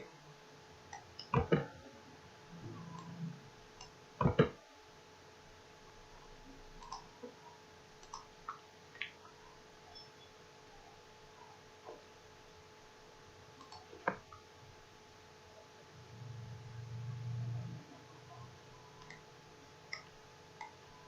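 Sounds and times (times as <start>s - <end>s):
computer mouse clicking: 6.8s - 7.1s, 8.0s - 9.2s, 13.6s - 14.4s, 19.0s - 19.2s.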